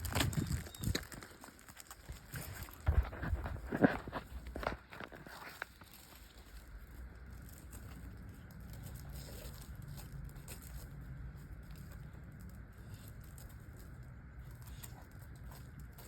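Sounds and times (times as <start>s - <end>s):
wind rumble on microphone: 0.0s - 1.3s
crunches on icy snow: 0.0s - 16.0s.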